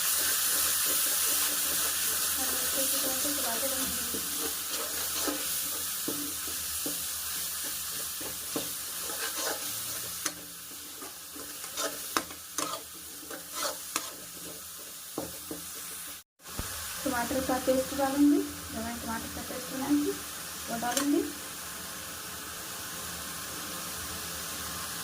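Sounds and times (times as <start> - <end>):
spatula scraping pan: 0.0 - 16.2
food sizzling in oil: 0.0 - 25.0.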